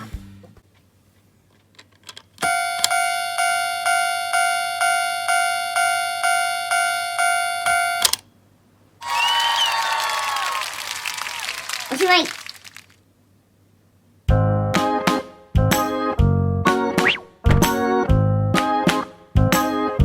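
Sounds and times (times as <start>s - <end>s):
toy level-crossing bell dinging: 2.4s - 8.0s.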